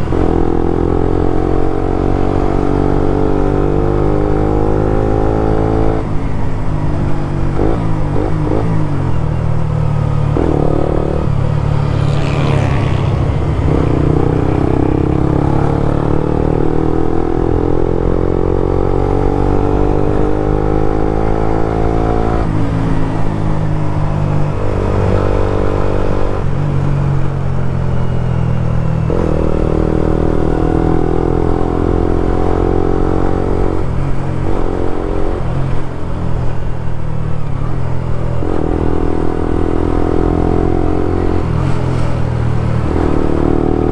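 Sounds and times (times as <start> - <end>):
motorcycle engine revving: 7.4 - 9.2, 10.1 - 27.6.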